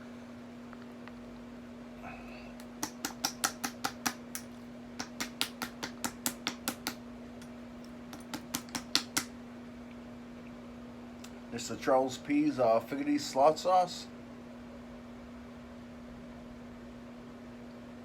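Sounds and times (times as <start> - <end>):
steady low hum: 0.0 - 18.0
rapid sharp clicks: 2.6 - 7.0, 7.8 - 9.3.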